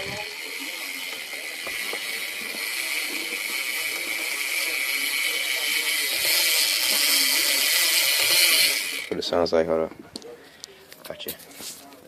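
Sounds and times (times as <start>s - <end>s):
bike hub ratchet buzzing: 0.0s - 9.4s.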